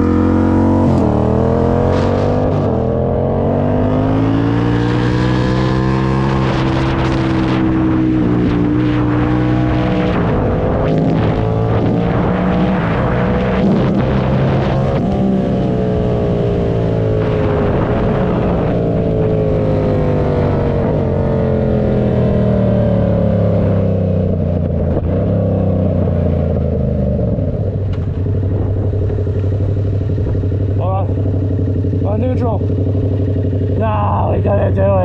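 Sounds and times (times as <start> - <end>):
engine revving and winding down: 0.0 - 23.9.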